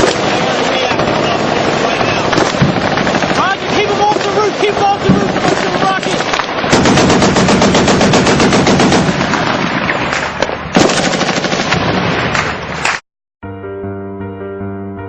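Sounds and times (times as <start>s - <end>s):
airsoft gun firing full auto: 6.7s - 9.5s, 10.8s - 11.9s.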